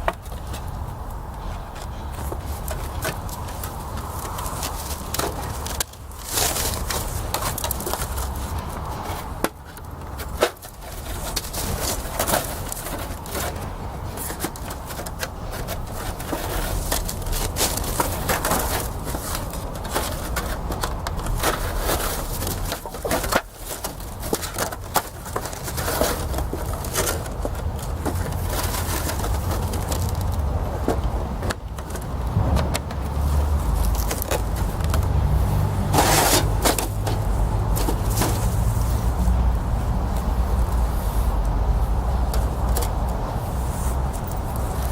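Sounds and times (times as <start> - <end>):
steady low rumble: 32.0 - 35.8.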